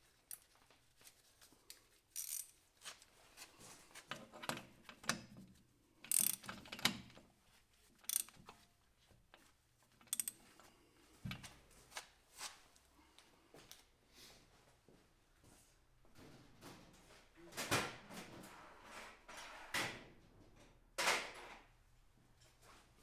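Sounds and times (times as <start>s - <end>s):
metal hand tools clicking: 8.1s - 8.3s.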